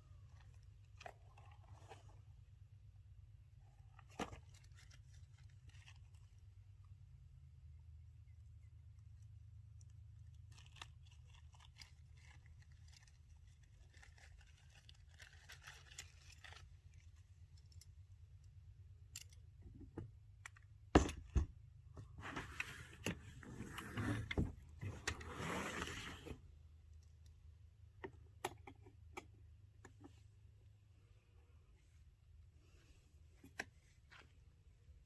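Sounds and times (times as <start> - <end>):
scraping and rustling: 22.0 - 26.5.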